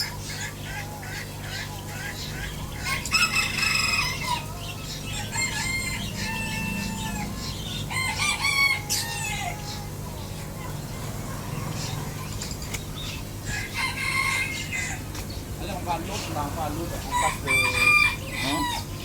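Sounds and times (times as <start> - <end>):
high animal calls: 0.0 - 12.4
steady low hum: 0.0 - 19.0.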